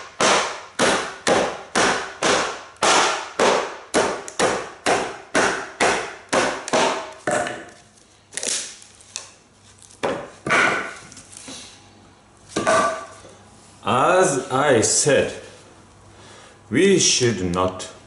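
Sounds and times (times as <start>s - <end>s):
baton striking hatchet through wood: 0.0s - 7.8s, 10.0s - 11.0s.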